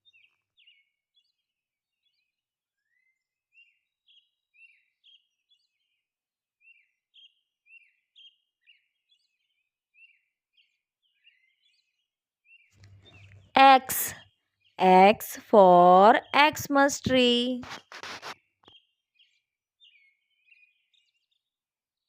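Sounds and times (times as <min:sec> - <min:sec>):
bird chirping: 0:12.8 - 0:13.5.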